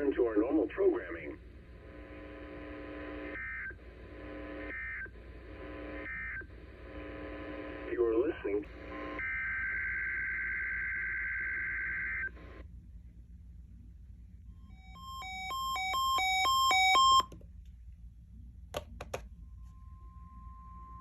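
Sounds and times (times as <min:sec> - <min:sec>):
steady warning alarm tone: 0:14.7 - 0:17.3
clicks: 0:18.7 - 0:19.3.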